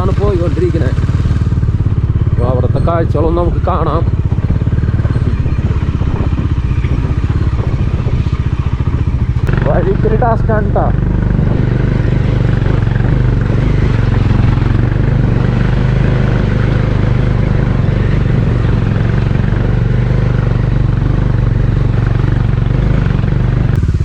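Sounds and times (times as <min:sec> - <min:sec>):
motorcycle engine running: 0:00.0 - 0:24.0
road and wind noise: 0:00.0 - 0:24.0.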